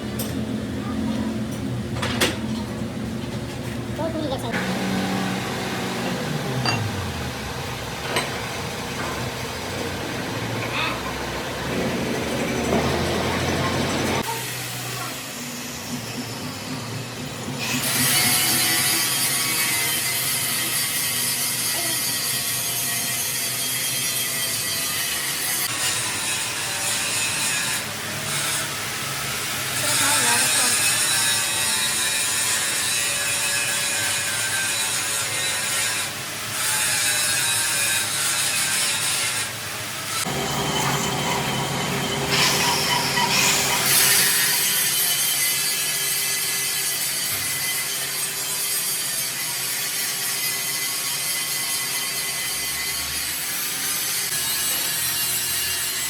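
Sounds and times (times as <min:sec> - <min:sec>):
steel being ground: 0:04.6 - 0:07.2, 0:17.6 - 0:56.0.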